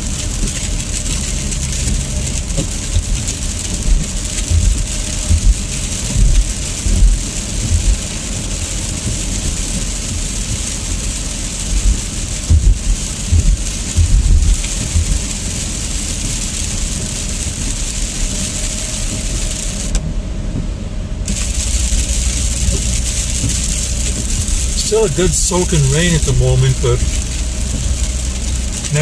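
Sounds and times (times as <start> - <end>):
heavy rain on car roof: 0.0 - 29.0
tyres on wet road: 0.0 - 29.0
low thumps: 3.8 - 8.0, 11.8 - 15.2.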